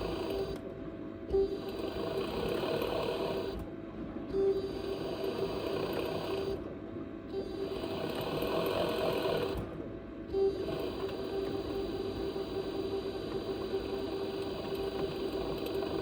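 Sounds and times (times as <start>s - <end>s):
washing machine mechanical whir: 0.0s - 16.0s
washing machine whine: 0.0s - 16.0s.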